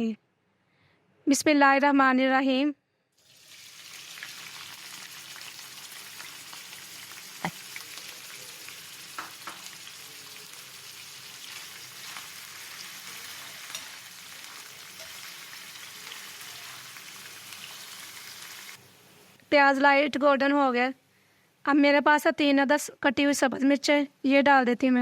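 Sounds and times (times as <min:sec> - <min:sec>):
onions sizzling in fat: 0:03.2 - 0:19.4.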